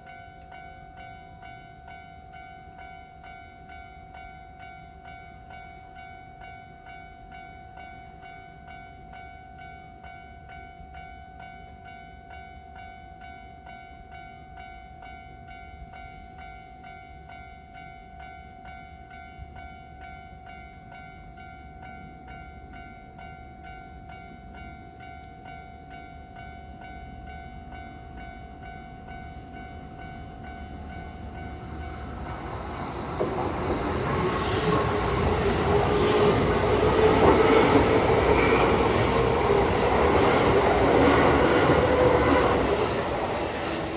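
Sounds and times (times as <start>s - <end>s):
level crossing warning bell: 0.0s - 43.9s
electric train passing: 20.5s - 43.9s.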